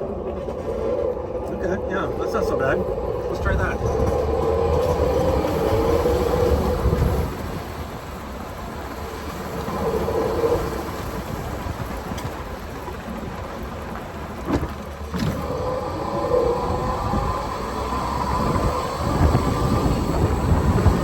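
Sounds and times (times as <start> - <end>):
wind buffeting microphone: 0.0 - 21.0
electric drive whine: 15.2 - 21.0.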